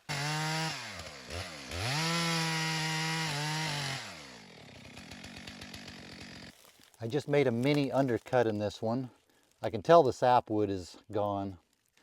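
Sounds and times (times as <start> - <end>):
chainsaw revving and cutting wood: 0.0 - 6.7.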